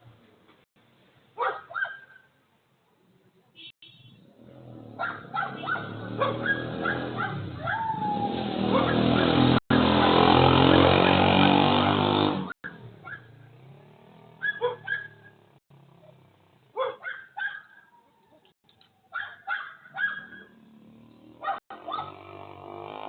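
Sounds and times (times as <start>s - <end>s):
dog yelping and whimpering: 5.0s - 9.0s.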